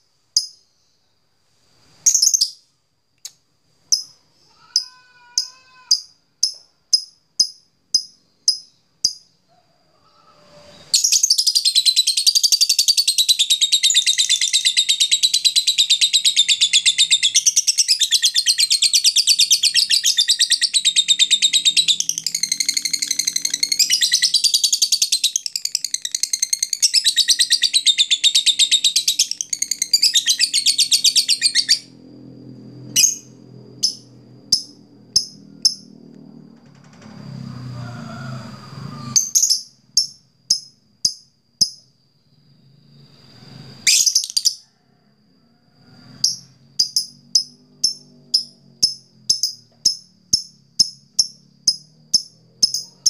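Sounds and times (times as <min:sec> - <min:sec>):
lovebird chattering trill: 0:11.0 - 0:31.8.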